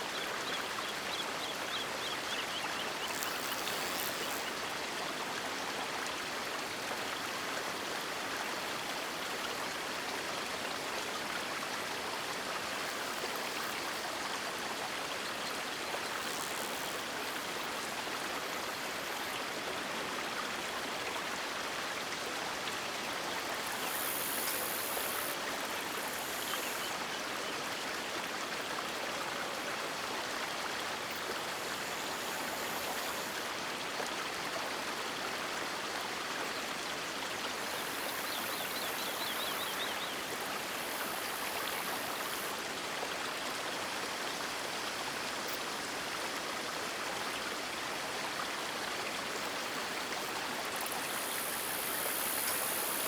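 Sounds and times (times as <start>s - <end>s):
river water flowing: 0.0s - 53.0s.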